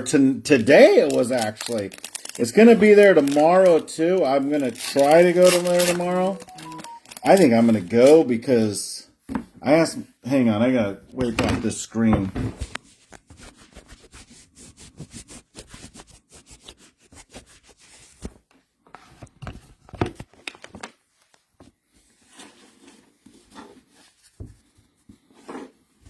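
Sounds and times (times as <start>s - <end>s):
cards rubbing and sliding: 0.5s - 8.2s.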